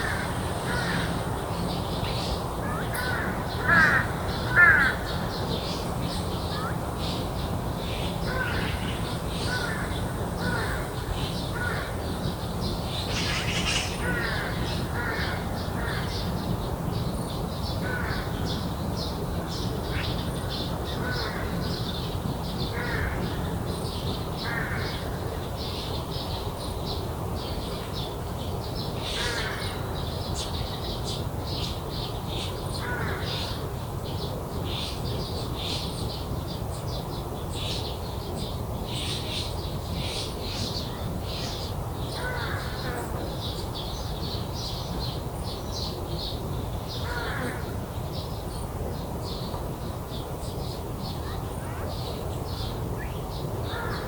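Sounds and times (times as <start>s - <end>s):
crows cawing: 0.0s - 1.2s, 2.7s - 5.2s, 8.3s - 12.0s, 13.1s - 16.2s, 42.2s - 43.0s, 47.0s - 47.7s, 53.6s - 54.0s.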